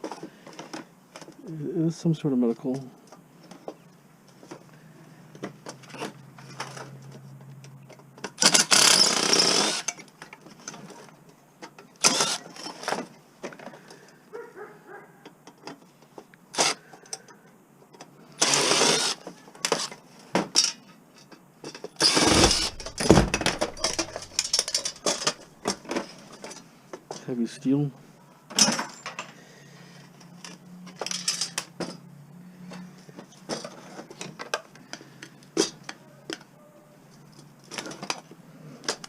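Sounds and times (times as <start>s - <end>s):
loud noisy bursts: 22.1s - 24.8s
metal knocks and clatter: 22.1s - 26.5s.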